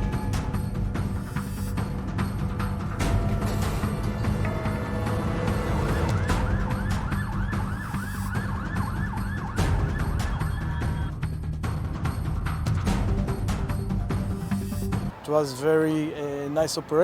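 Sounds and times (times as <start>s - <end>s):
low background music: 0.0s - 17.0s
emergency siren yelping: 5.3s - 11.1s.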